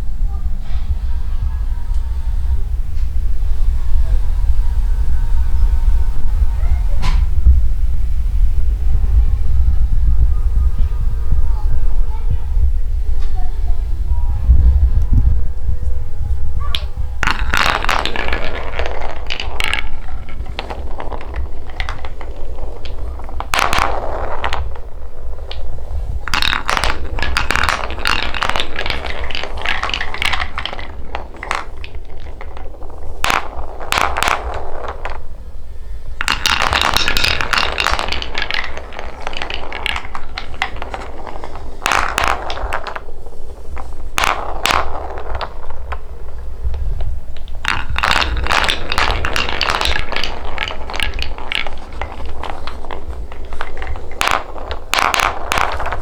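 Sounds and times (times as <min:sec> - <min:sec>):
steady low hum: 0:00.0 - 0:17.2
balls rattling along wooden marble run: 0:16.5 - 0:56.0.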